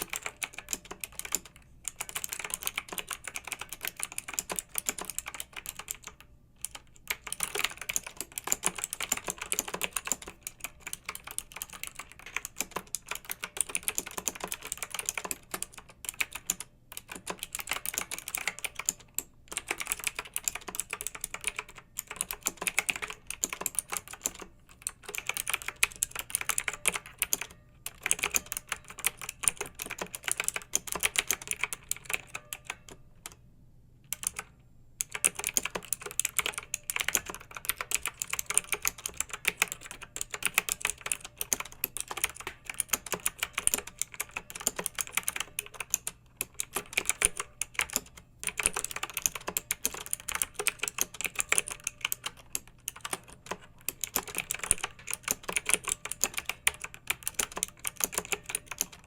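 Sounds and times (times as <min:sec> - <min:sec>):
mechanical keyboard typing: 0:00.0 - 0:33.4, 0:34.1 - 0:59.0.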